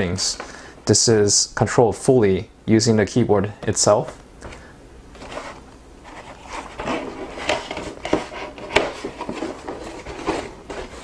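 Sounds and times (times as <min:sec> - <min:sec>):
packaging rubbing and scraping: 0:05.2 - 0:11.0.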